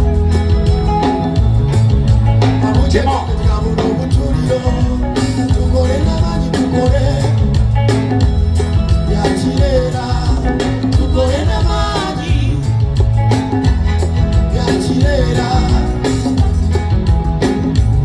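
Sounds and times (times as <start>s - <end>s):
live band playing upbeat song: 0.0s - 18.0s
person singing: 8.8s - 12.8s, 14.2s - 16.6s.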